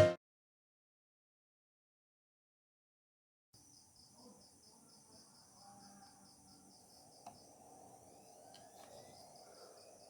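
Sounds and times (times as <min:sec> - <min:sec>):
cricket chirping faintly: 0:03.6 - 0:10.0
faint clicks: 0:07.2 - 0:09.9.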